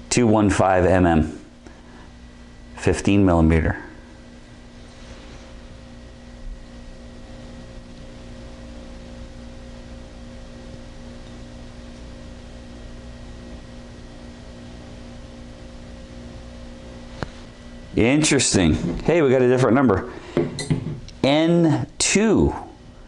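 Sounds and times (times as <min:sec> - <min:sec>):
electrical hum: 0:00.0 - 0:23.0.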